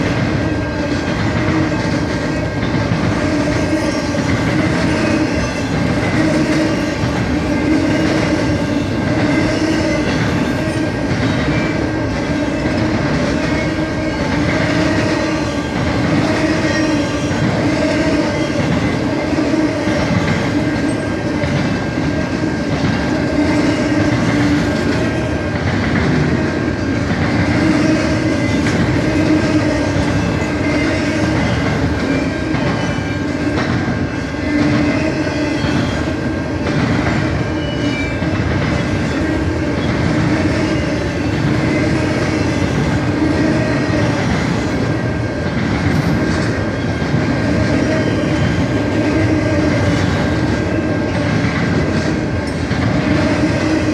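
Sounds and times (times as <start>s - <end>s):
freight train rumbling past: 0.0s - 53.9s.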